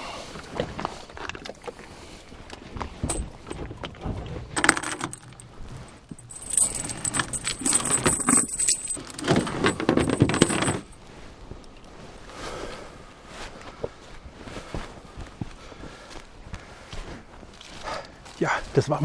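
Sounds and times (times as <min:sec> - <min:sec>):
metal objects clinking: 0:03.1 - 0:03.6, 0:04.6 - 0:05.4, 0:06.0 - 0:11.0.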